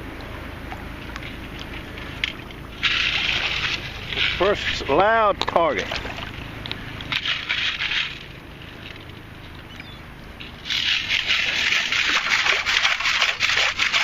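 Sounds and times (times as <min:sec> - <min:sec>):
sand and stones rattling: 0:01.7 - 0:06.4, 0:07.0 - 0:09.7, 0:10.4 - 0:14.0
scoop scraping sand: 0:10.6 - 0:14.0.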